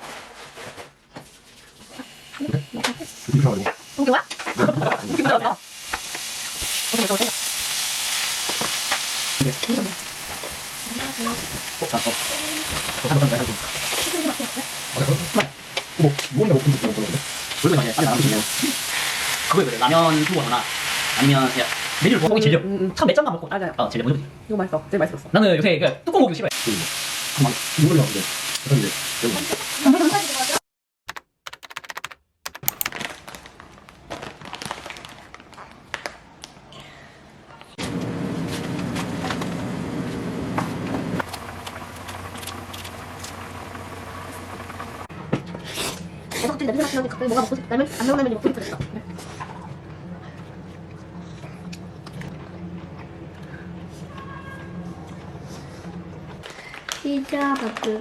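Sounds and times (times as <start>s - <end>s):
food sizzling in a pan: 1.9s - 22.3s, 26.5s - 30.6s
knocks and clicks of kitchen work: 44.6s - 45.7s.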